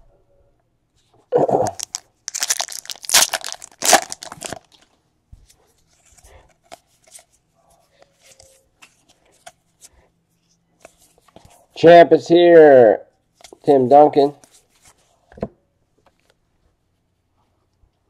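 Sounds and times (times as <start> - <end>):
card pack wrapper tearing: 1.7 - 4.8
wrapper crinkling: 1.7 - 5.0.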